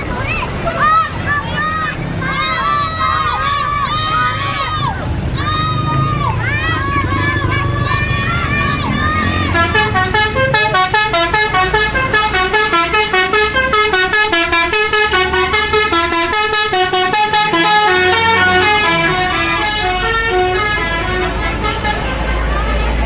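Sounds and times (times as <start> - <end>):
bus horn playing a melody: 9.2 - 23.0.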